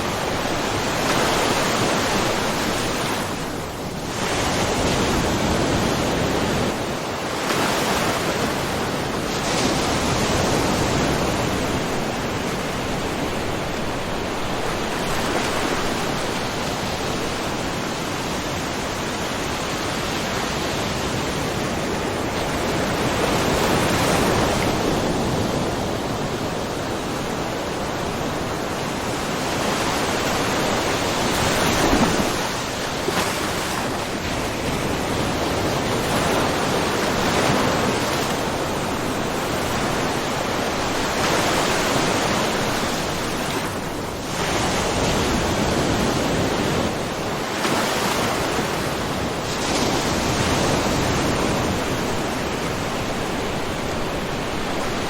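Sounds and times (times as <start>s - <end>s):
small waves lapping on rocks: 29.7s - 45.1s.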